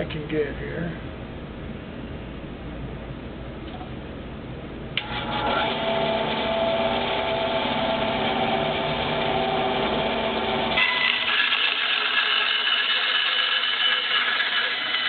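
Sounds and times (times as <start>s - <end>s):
power tool motor cutting wood: 5.0s - 15.0s.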